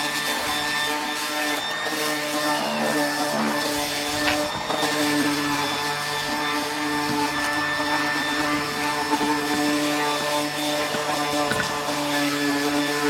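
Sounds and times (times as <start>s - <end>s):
power sander whining: 0.0s - 13.0s
sanding scratch: 0.0s - 13.0s.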